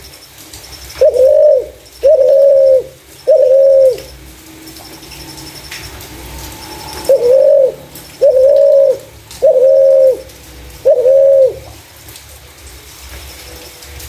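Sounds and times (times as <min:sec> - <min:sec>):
dove cooing: 0:01.0 - 0:04.2, 0:06.6 - 0:11.8.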